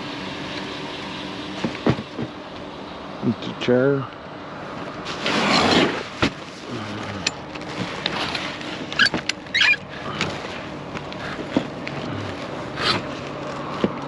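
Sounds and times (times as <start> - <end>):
vehicle engine idling: 0.0 - 5.2, 6.0 - 14.0
metal chair scraping: 5.0 - 10.7
short squeak: 9.0 - 9.9.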